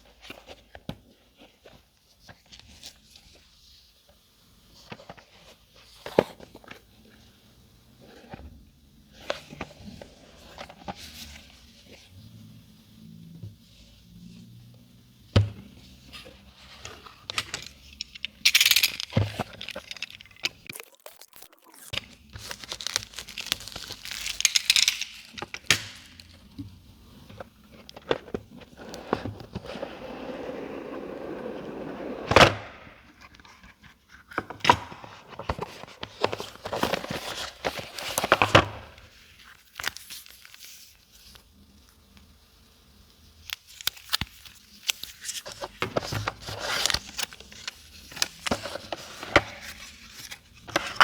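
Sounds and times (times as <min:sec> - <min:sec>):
packaging rustling: 0:16.2 - 0:26.6.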